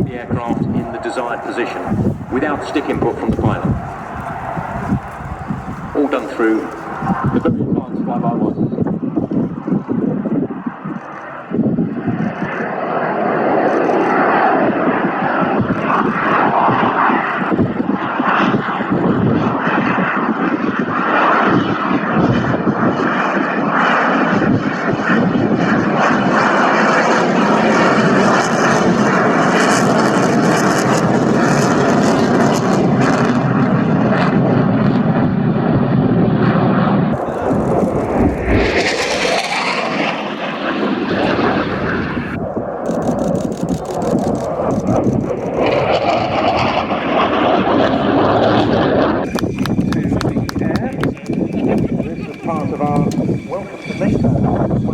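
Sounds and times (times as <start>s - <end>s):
jet fighter engines roaring: 0.0s - 54.9s.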